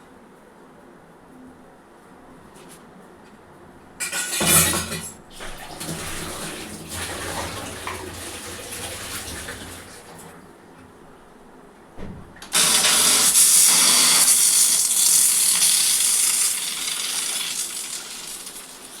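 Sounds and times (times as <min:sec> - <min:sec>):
pressure cooker steam hiss: 0:12.5 - 0:19.0.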